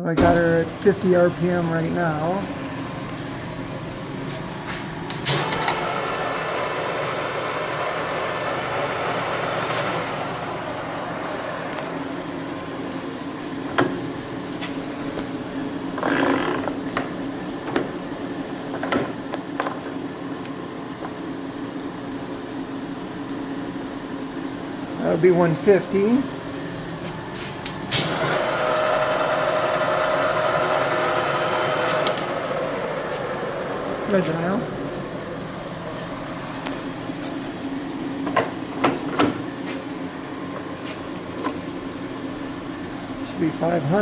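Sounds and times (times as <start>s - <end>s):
lathe motor and gearing humming: 0.0s - 44.0s.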